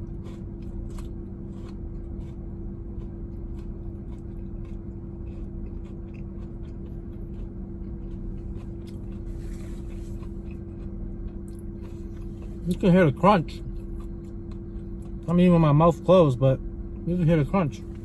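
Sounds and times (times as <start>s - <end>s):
car hum: 0.0s - 18.0s
soft chewing crunches: 0.0s - 18.0s.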